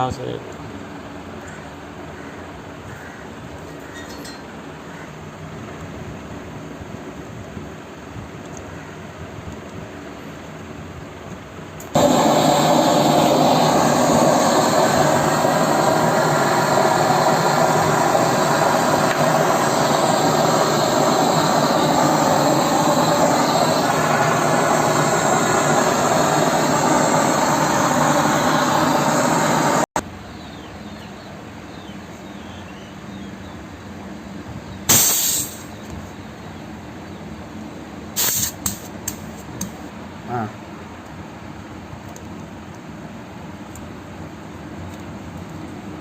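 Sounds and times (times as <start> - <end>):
refrigerant gas hissing: 11.8 - 30.0, 34.8 - 36.0, 38.1 - 39.9.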